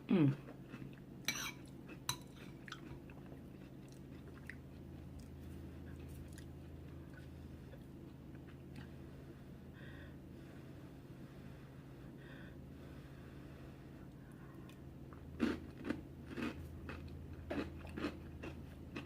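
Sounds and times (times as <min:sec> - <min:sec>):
steady low hum: 0:00.0 - 0:19.0
person chewing food: 0:00.4 - 0:09.0, 0:14.1 - 0:19.0.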